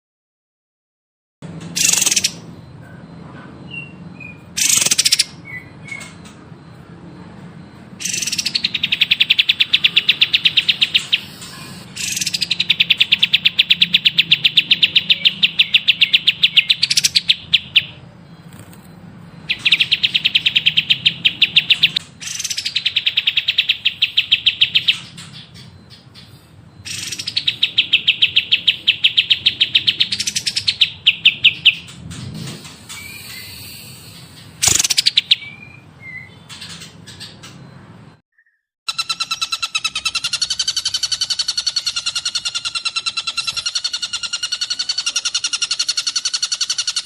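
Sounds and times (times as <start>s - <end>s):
songbird calls and trills: 3.7s - 6.6s, 7.9s - 18.8s, 19.4s - 32.0s, 32.6s - 37.6s.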